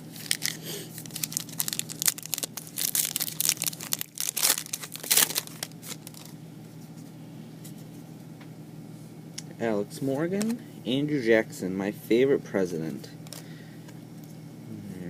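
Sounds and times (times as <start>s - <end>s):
plastic wrapper tearing and crinkling: 0.1s - 6.3s.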